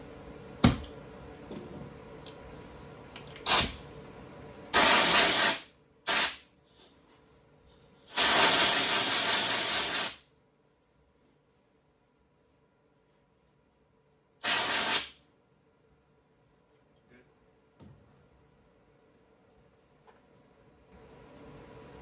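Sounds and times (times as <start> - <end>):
welder arc hissing: 3.5 - 3.8, 4.8 - 6.4, 8.1 - 10.2, 14.4 - 15.2.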